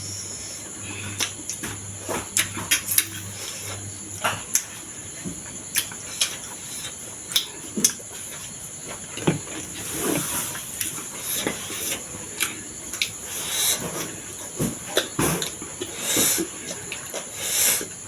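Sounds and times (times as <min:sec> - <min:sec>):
wet mouth clicks and chewing: 0:01.2 - 0:01.6.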